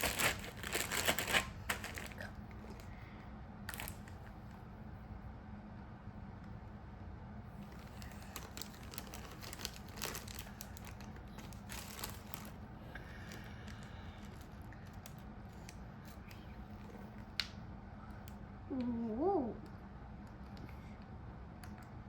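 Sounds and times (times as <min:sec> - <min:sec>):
plastic packaging crinkling: 0:00.0 - 0:03.0, 0:03.7 - 0:04.4, 0:07.6 - 0:16.3.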